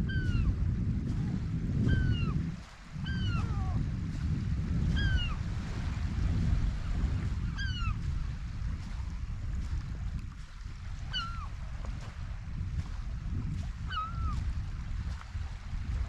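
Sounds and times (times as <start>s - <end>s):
gulls calling: 3.0s - 3.8s, 11.1s - 11.5s, 13.9s - 14.4s.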